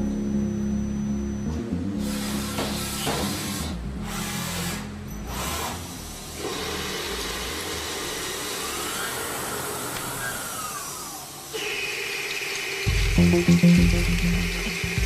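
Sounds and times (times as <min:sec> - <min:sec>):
faint whine: 0:00.0 - 0:03.0
lathe machining metal: 0:01.9 - 0:15.0.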